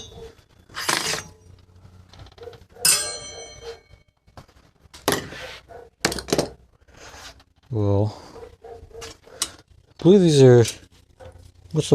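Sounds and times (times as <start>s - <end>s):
ringing metallic clang: 2.8s - 4.1s.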